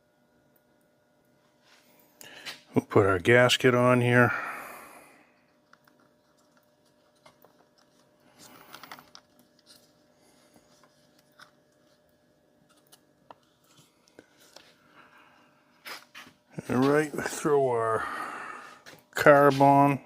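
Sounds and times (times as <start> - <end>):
small parts clicking and rustling: 5.4 - 12.0.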